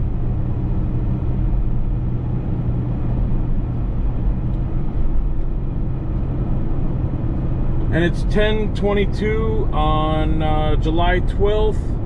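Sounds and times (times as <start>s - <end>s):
car road and engine rumble: 0.0s - 12.0s.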